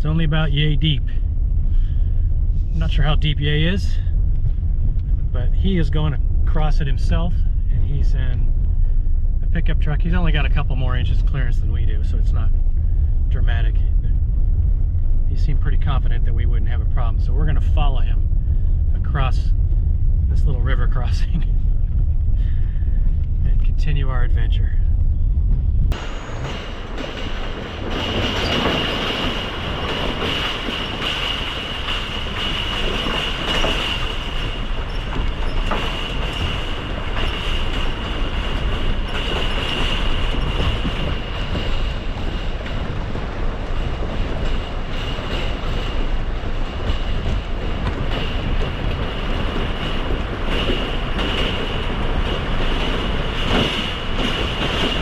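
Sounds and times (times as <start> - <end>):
high-pitched whine: 0.0 - 42.7
car engine rumble: 0.0 - 55.0.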